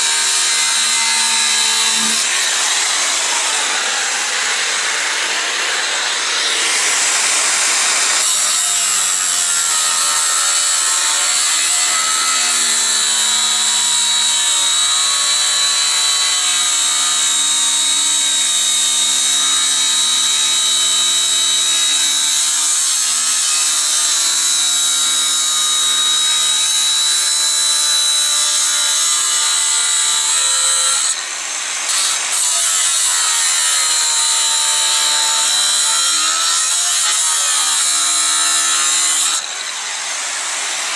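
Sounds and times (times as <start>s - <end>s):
angle grinder cutting steel: 0.0s - 40.9s.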